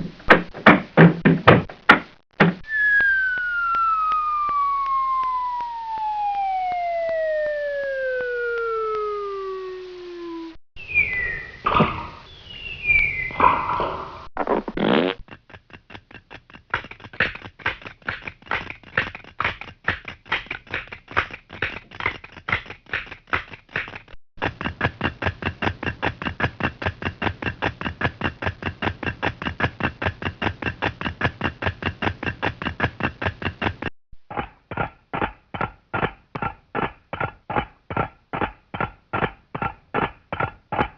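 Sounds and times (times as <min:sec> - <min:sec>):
rapid pulses: 0:02.6 - 0:10.6
falling whistle-like glides: 0:02.6 - 0:11.6
steady buzzing tone: 0:03.6 - 0:10.6.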